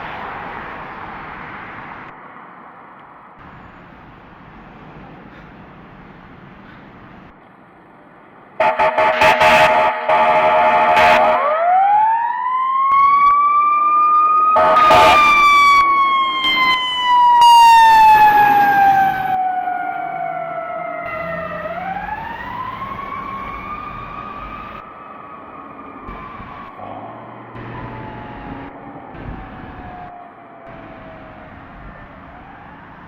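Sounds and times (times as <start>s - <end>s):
air horn blasting: 8.6s - 11.6s, 14.6s - 15.4s
siren wailing: 8.6s - 33.0s.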